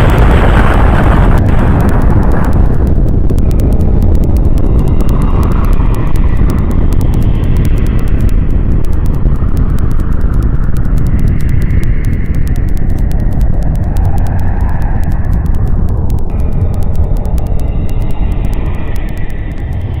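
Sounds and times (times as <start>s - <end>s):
deep explosion-like rumble: 0.0s - 20.0s
fast crackle of sharp clicks: 0.0s - 20.0s.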